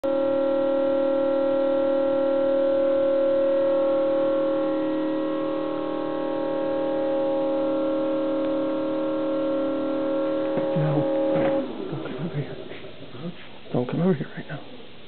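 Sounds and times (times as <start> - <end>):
refrigerator howling held tones: 0.0 - 13.8.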